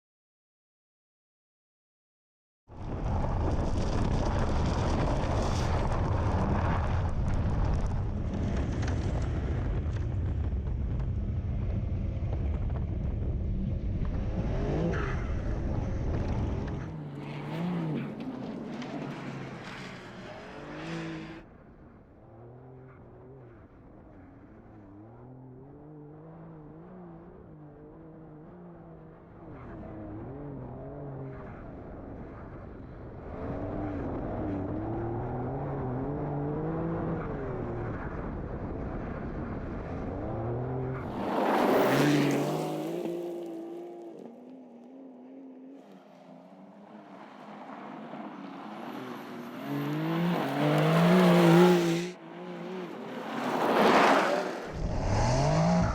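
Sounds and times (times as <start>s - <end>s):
car engine revving: 47.6s - 55.9s.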